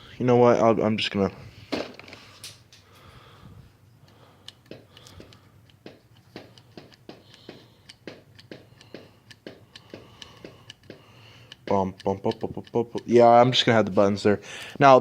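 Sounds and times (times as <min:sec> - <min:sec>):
clicks of handling hard parts: 0:04.0 - 0:13.1.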